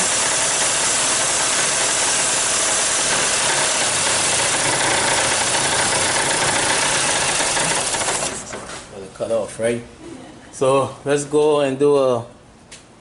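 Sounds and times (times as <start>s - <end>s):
car engine idling roughly: 0.0s - 8.6s.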